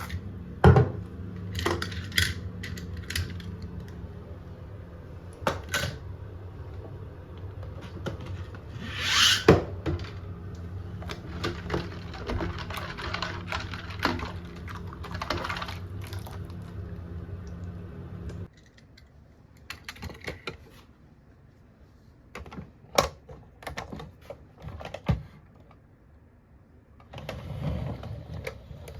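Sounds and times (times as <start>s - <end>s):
low steady hum: 0.0s - 22.3s.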